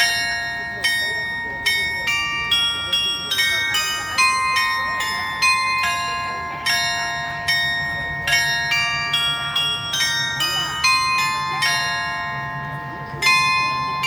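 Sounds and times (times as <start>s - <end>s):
carillon bells playing melody: 0.0s - 14.0s.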